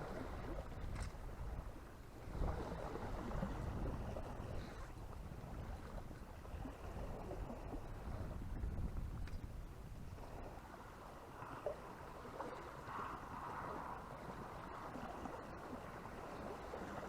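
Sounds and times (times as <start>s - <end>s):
wind rumbling on microphone: 0.0s - 17.0s
faint ticks: 9.2s - 9.5s.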